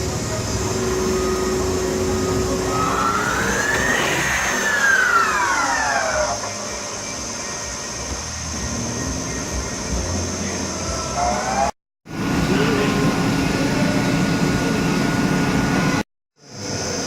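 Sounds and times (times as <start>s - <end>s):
lathe spindle drive whining: 0.0s - 16.0s
steady high whine: 0.0s - 17.0s.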